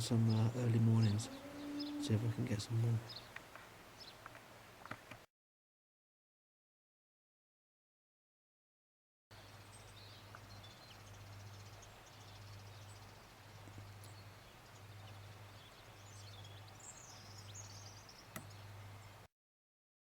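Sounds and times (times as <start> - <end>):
small birds chirping: 0.0 - 4.5, 9.4 - 19.3.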